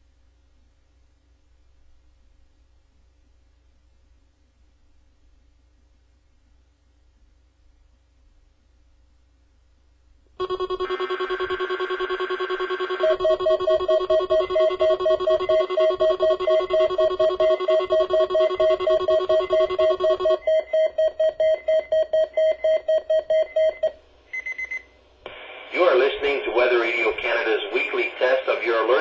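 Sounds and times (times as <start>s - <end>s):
steady warning tone: 10.4s - 24.6s
rapid beeping alarm tone: 10.4s - 24.8s.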